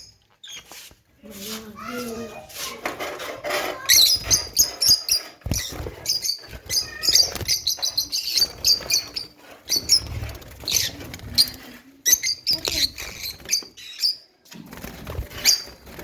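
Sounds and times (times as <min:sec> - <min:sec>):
lovebirds chirping: 0:03.8 - 0:14.4.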